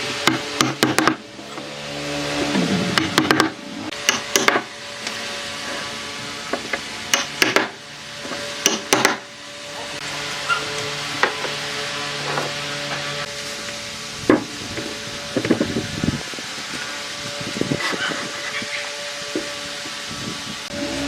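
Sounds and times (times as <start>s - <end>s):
steady low hum: 0.0s - 21.0s
sharp knocks on wood: 0.3s - 1.2s, 3.0s - 3.5s, 4.1s - 4.6s, 8.6s - 9.2s.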